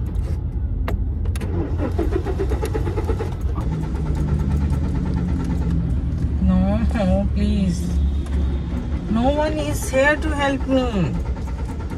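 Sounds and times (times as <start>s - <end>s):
car starter cranking: 1.2s - 7.0s.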